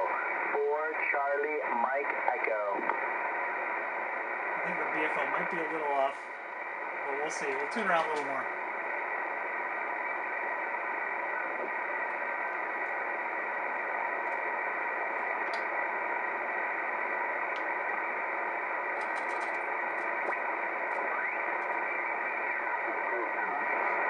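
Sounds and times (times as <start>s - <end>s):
radio receiver hiss: 0.0s - 24.0s
faint clicks: 15.4s - 15.7s
rising radio whistle: 20.4s - 23.8s.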